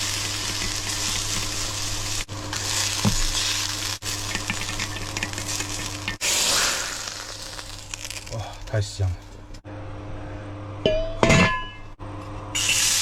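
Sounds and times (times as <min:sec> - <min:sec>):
meat sizzling in hot oil: 0:00.0 - 0:08.3, 0:12.6 - 0:13.0.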